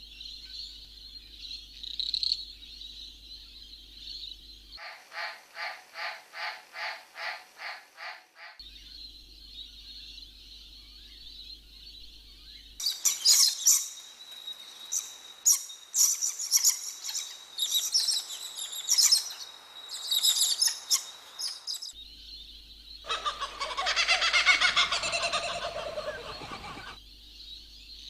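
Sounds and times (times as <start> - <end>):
songbirds chirping: 0.0 - 28.0
harsh low bird call: 23.1 - 27.0.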